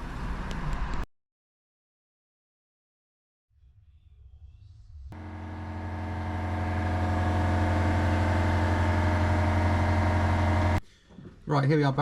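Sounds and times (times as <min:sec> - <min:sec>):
motorcycle engine running: 0:05.2 - 0:10.8.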